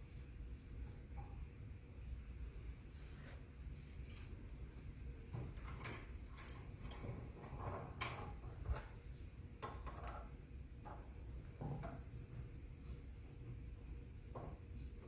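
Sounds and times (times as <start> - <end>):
metal parts clicking and clinking: 5.6 - 7.1.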